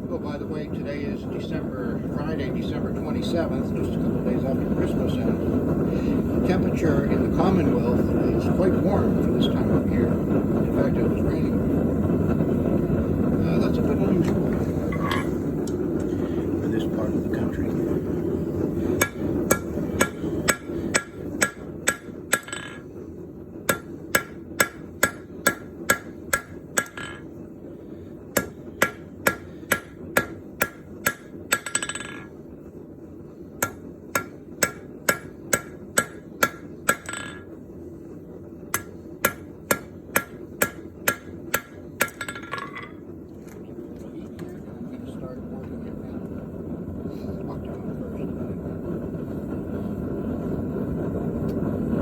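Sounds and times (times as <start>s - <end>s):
forge furnace rushing: 0.0s - 43.0s
hammer blows on hot metal: 14.2s - 27.4s, 28.0s - 32.3s, 33.6s - 42.4s.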